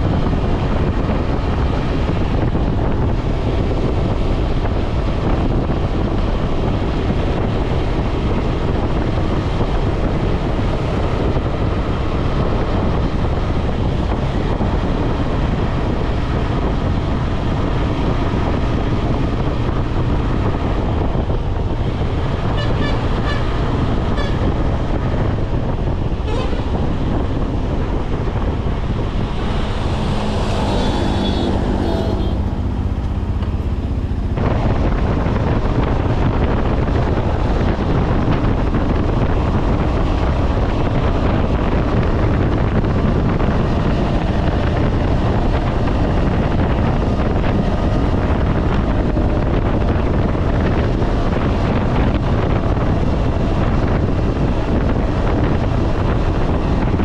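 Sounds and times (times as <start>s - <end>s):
wind rushing over microphone: 0.0s - 57.0s
vehicle horn: 22.5s - 24.7s, 26.2s - 26.8s, 30.5s - 32.8s.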